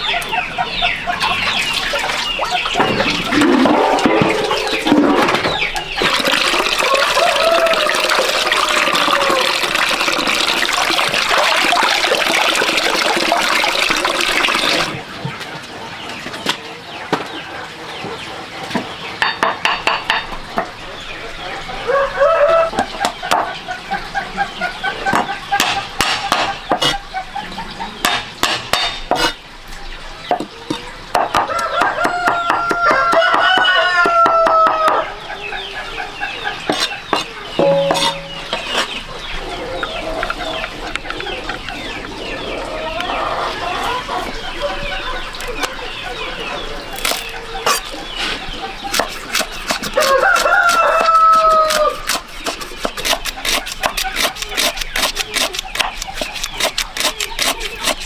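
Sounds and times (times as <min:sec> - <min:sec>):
chickens clucking: 0:00.0 - 0:58.0
rooster crowing: 0:06.7 - 0:09.8, 0:21.8 - 0:22.8, 0:31.4 - 0:35.1, 0:50.0 - 0:52.1.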